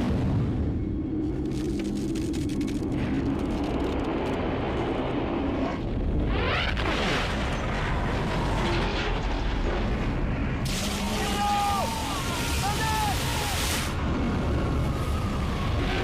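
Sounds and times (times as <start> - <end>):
heavy deep rumble: 0.0 - 11.3.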